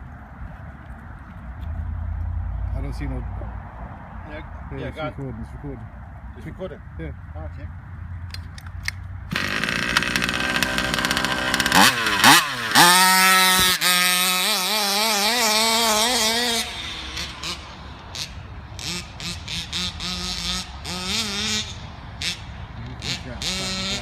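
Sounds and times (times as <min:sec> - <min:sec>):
small two-stroke engine revving: 0:09.3 - 0:24.0.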